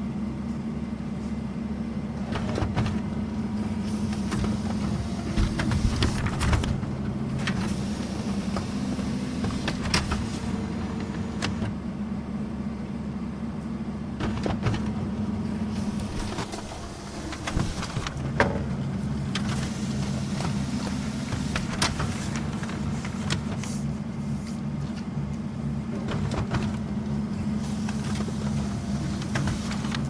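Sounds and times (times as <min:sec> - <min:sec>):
printer motor hum: 0:00.5 - 0:30.0
printer mechanical clicks: 0:19.2 - 0:23.8.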